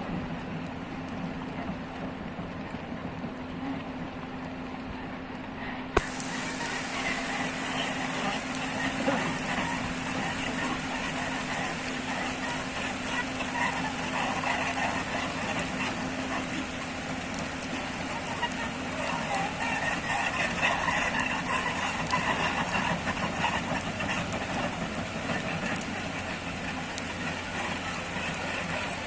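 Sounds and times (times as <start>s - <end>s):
heavy machine engine running: 6.0s - 29.0s
heavy rain hiss: 6.0s - 29.0s.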